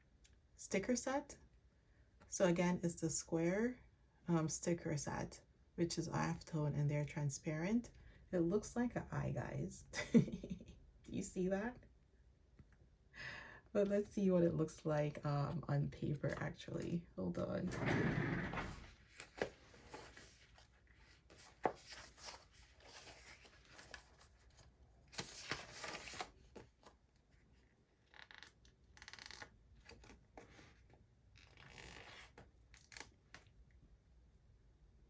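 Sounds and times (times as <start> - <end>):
paper rustling and crinkling: 17.7 - 33.5.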